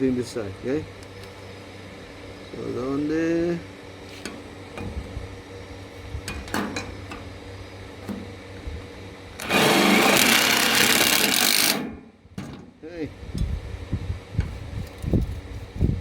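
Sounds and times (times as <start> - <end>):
power drill running: 9.4 - 11.9.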